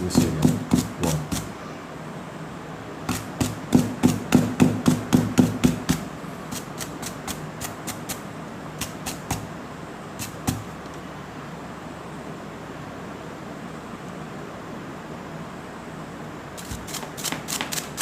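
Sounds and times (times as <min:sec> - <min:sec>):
tool parts knocking on hard surface: 0:00.0 - 0:01.5.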